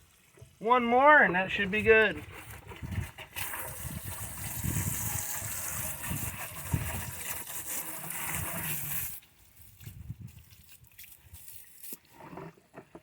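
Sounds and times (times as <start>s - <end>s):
water gushing from a hose: 1.5s - 12.9s
faint water sloshing: 8.1s - 13.0s.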